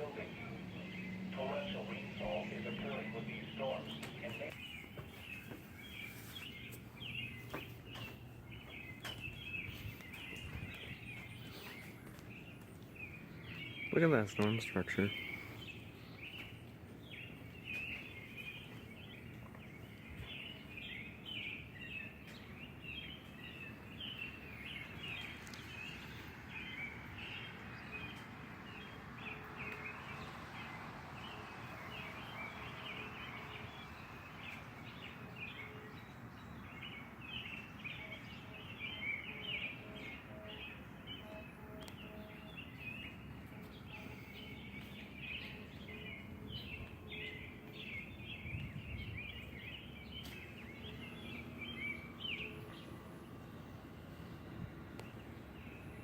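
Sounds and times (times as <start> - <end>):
birds chirping: 0.0 - 56.0
wind noise: 9.2 - 11.1, 48.3 - 49.6.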